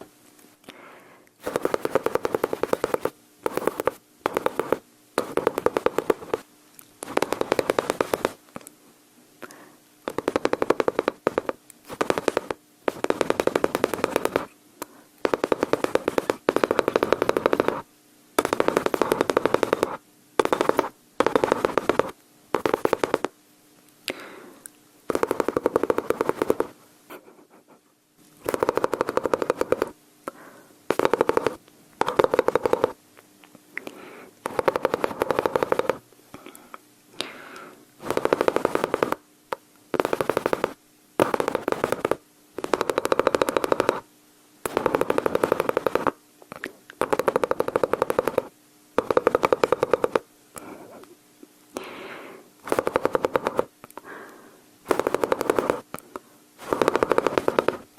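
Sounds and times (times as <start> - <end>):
person imitating machine-gun fire: 1.4 - 6.4, 7.0 - 8.4, 10.1 - 14.5, 15.2 - 23.3, 25.1 - 27.7, 28.4 - 30.0, 30.9 - 33.0, 34.4 - 36.0, 38.0 - 39.2, 39.9 - 46.2, 47.0 - 50.3, 51.8 - 54.3, 54.9 - 56.0, 56.6 - 57.9.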